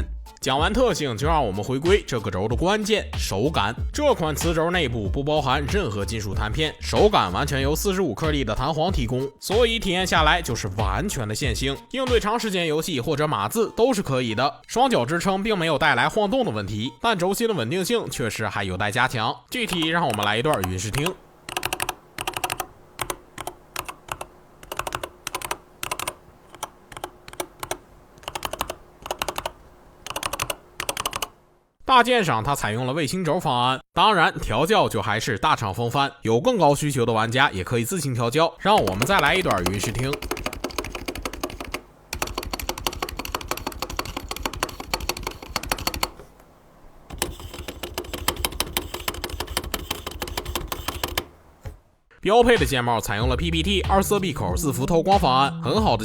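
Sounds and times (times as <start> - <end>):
keyboard typing: 19.6 - 31.4, 38.7 - 46.3, 47.1 - 51.8.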